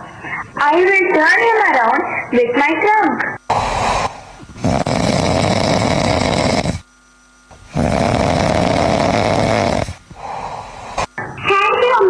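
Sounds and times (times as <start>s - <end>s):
loud snoring: 3.5s - 6.9s, 7.5s - 11.2s.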